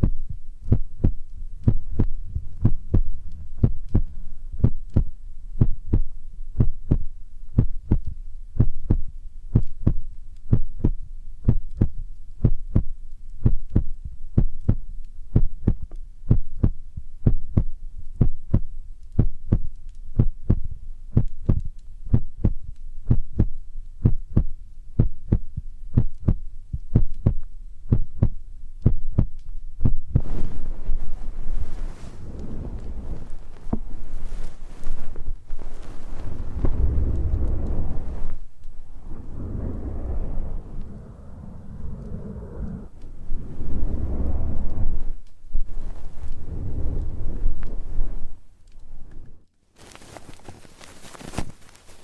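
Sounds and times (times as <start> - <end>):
soft low heartbeat-like thumps: 0.0 - 49.4
rustling hiss: 30.2 - 52.0.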